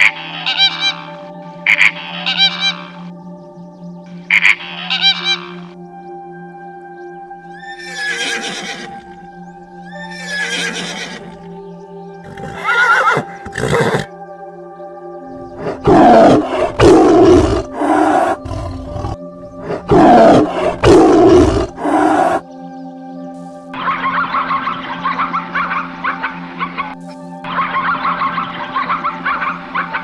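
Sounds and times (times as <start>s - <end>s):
donkey braying: 0.0s - 3.1s, 4.3s - 5.8s, 7.5s - 9.2s, 9.8s - 11.5s, 12.2s - 14.1s, 15.4s - 22.4s, 23.8s - 30.0s
background music: 0.0s - 30.0s.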